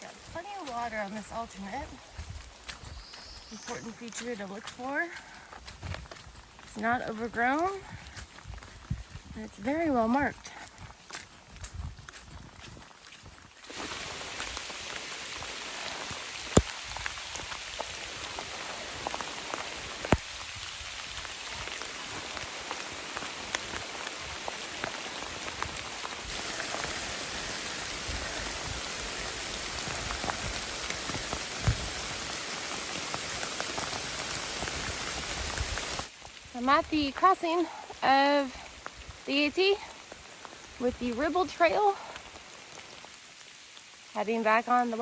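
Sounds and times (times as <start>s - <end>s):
steady rain falling: 0.0s - 45.0s
sharp rain drop hits: 13.7s - 37.8s.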